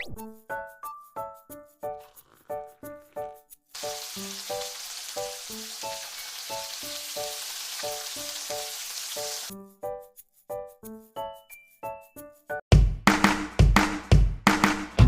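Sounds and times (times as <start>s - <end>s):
food sizzling in hot oil: 3.7s - 9.5s.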